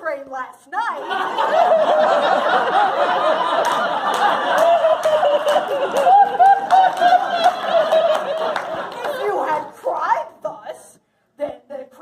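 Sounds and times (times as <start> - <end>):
audience laughing: 1.0 - 9.6.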